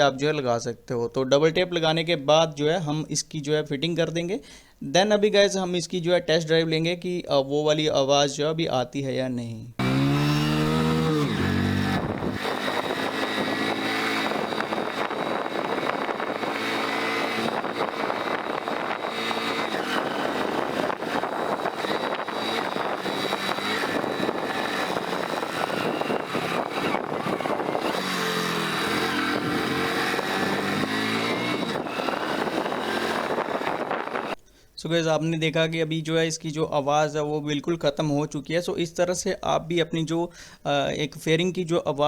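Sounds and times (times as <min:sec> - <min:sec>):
motorcycle engine running: 0:09.8 - 0:34.4
road noise: 0:09.8 - 0:34.4
wind noise: 0:09.8 - 0:34.4.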